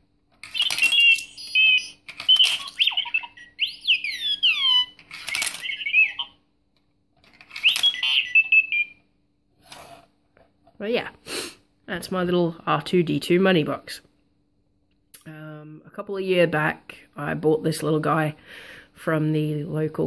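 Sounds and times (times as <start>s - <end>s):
toy beeping chirps and warbles: 0.4s - 6.4s, 7.4s - 9.2s
falling whistles: 7.6s - 9.0s.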